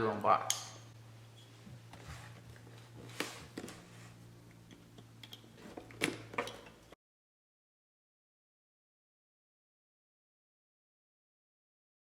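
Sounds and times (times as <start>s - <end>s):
low electrical hum: 0.0s - 7.0s.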